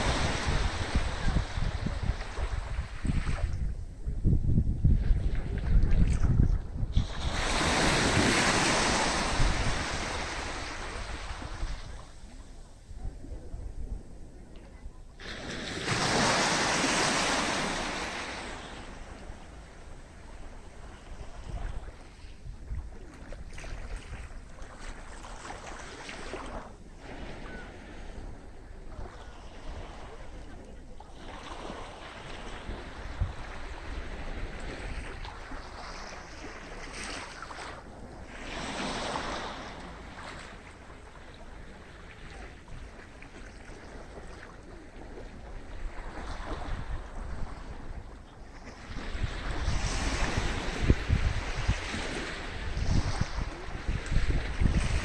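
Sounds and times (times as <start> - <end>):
sea waves washing onto beach: 0.0 - 3.6, 5.2 - 12.7, 15.2 - 55.0
wind rumble on microphone: 0.0 - 55.0
sea wave breaking on beach: 7.0 - 11.9, 15.2 - 19.2.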